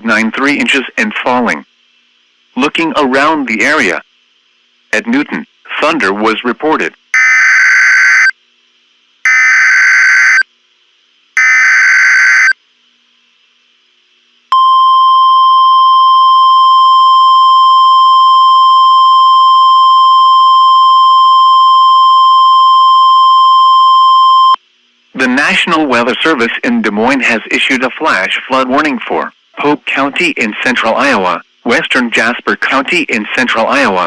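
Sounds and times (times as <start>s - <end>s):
steady piercing alarm tone: 7.1s - 8.4s, 9.2s - 10.5s, 11.4s - 12.6s, 14.5s - 24.6s
buzzing digital data bursts: 11.4s - 12.6s.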